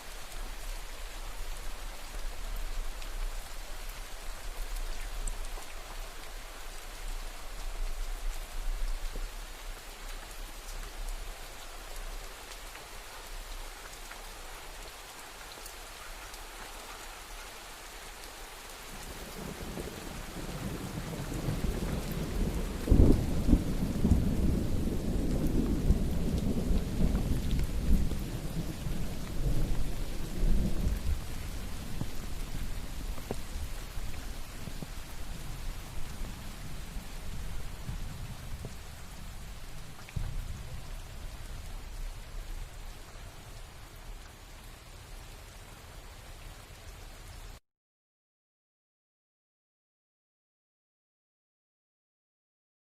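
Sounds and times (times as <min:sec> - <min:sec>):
steady rainfall: 0:00.0 - 0:47.6
thunder rolling: 0:20.6 - 0:34.0.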